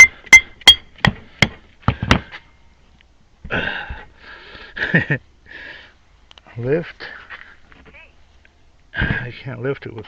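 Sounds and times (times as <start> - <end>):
hammer striking steel: 0.0 - 1.6.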